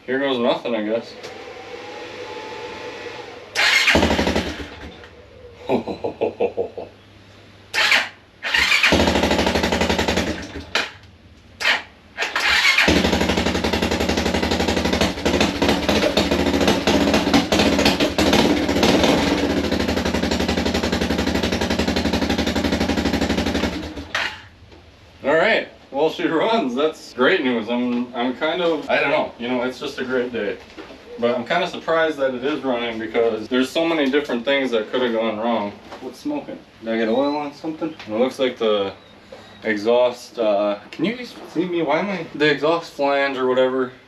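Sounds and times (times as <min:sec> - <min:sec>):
quad bike engine starting: 0:01.0 - 0:05.2, 0:07.7 - 0:24.6.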